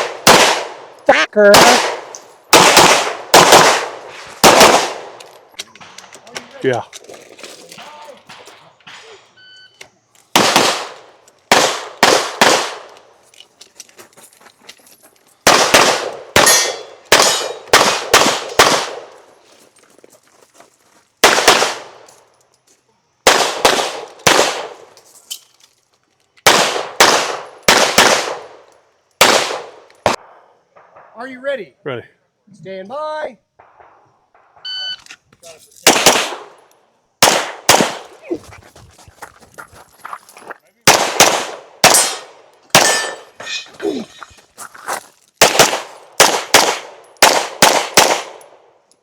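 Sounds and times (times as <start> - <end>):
pistol shots: 0.0 - 0.9, 1.5 - 5.2, 10.3 - 13.0, 15.4 - 19.1, 21.2 - 22.0, 23.2 - 24.9, 26.4 - 28.6, 29.2 - 31.1, 35.8 - 36.6, 37.2 - 38.1, 40.9 - 43.4, 45.4 - 48.6
electronic timer beep: 34.6 - 35.0.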